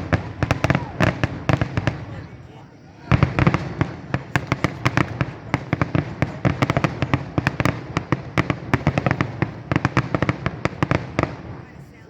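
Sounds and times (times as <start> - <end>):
fireworks bangs and booms: 0.0 - 12.0.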